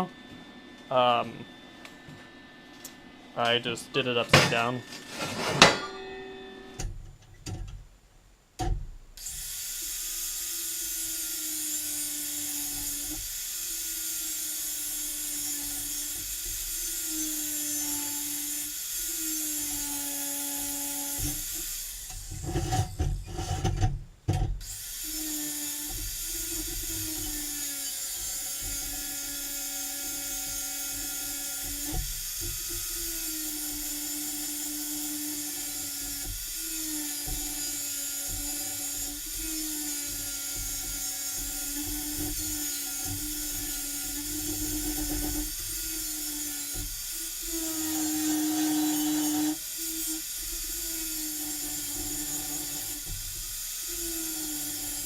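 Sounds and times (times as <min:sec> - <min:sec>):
angle grinder whining: 0:00.0 - 0:07.0, 0:09.2 - 0:23.8, 0:24.6 - 0:55.0
metal clanks: 0:03.5 - 0:07.8.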